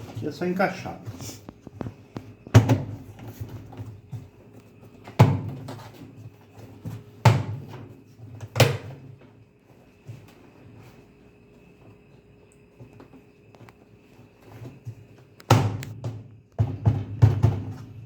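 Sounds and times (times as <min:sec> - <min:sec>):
loud knocks on washing machine cover: 0:02.5 - 0:03.0, 0:05.2 - 0:05.7, 0:07.2 - 0:07.8, 0:15.5 - 0:18.0.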